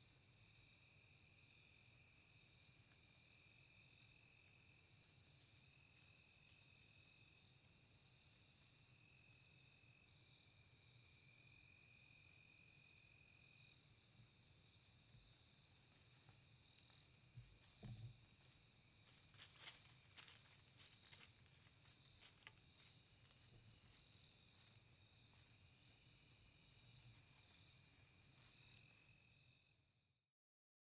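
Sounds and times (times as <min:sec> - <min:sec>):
insects chirping chorus: 0:00.0 - 0:29.8
low insect trill: 0:00.0 - 0:29.8
soft thump: 0:17.8 - 0:18.2.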